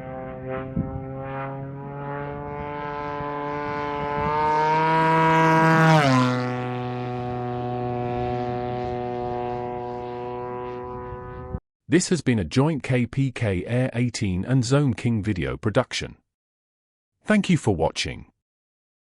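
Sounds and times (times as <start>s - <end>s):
model aircraft engine flying past: 0.0s - 11.6s.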